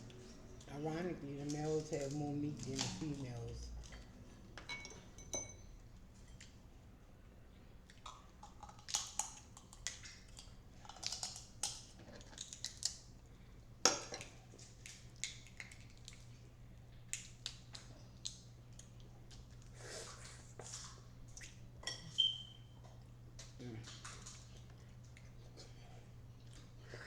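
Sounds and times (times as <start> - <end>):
chewing: 7.8 - 13.4, 14.2 - 27.0
crab shells cracking: 7.9 - 13.1, 13.9 - 19.7.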